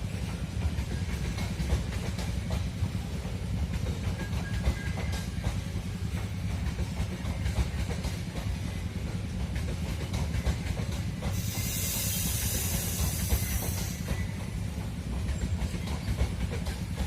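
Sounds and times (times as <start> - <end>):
freight train wagons rumbling: 0.0 - 17.0
loud hiss: 11.3 - 14.1.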